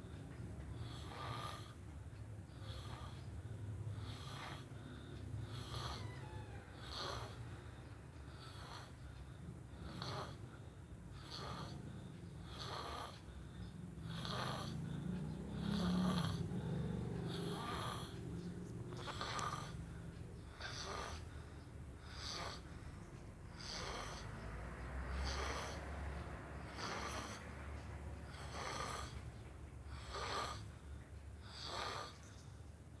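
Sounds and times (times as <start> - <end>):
person snoring: 14.0 - 19.8.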